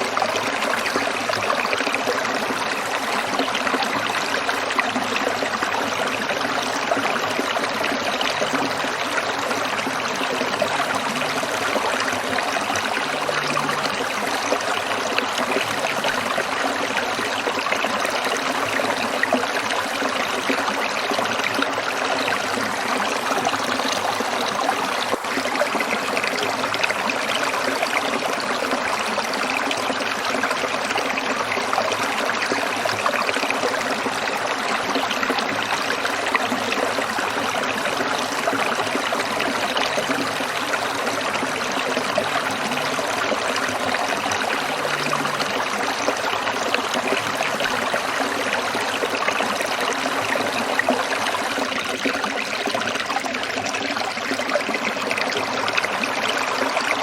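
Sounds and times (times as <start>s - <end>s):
stream burbling over rocks: 0.0s - 57.0s.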